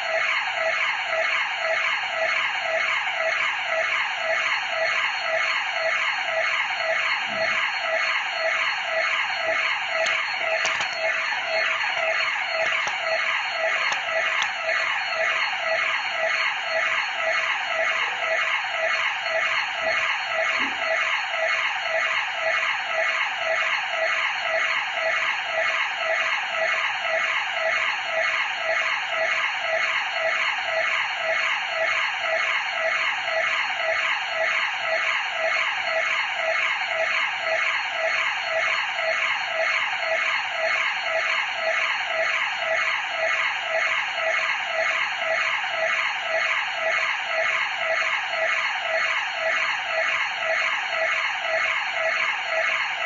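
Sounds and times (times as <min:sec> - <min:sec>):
burglar alarm siren wailing: 0:00.0 - 0:53.0.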